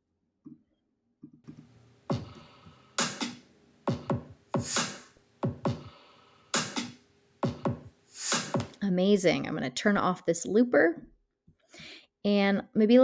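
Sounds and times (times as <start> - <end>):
drum machine loop: 1.5 - 8.8
deep kick drums: 2.1 - 2.4, 3.9 - 4.7, 5.4 - 6.0, 7.4 - 7.9.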